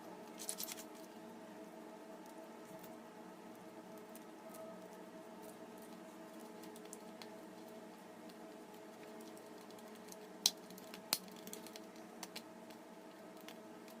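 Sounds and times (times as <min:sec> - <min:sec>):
steady low hum: 0:00.0 - 0:14.0.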